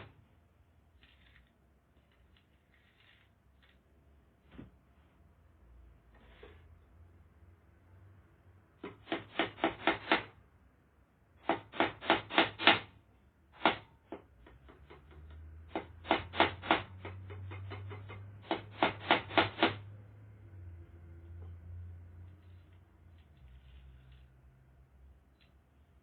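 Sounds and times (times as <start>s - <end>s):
hammer driving nails: 8.8s - 10.4s, 11.4s - 12.9s, 13.6s - 19.8s.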